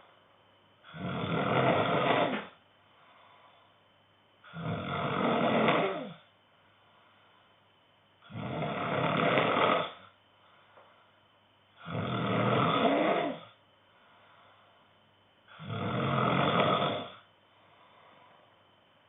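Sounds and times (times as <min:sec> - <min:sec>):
man snoring loudly: 0:00.9 - 0:02.6, 0:04.5 - 0:06.2, 0:08.3 - 0:10.1, 0:11.8 - 0:13.6, 0:15.5 - 0:17.2
quiet breathing: 0:02.2 - 0:04.8, 0:05.8 - 0:08.6, 0:09.8 - 0:12.0, 0:12.8 - 0:15.9, 0:16.9 - 0:19.0.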